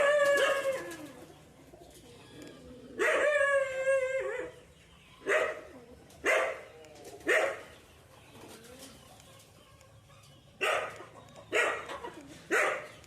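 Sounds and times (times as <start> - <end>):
dog barking: 3.0 - 3.4, 5.2 - 6.7, 7.3 - 7.7, 10.6 - 11.9, 12.5 - 13.0.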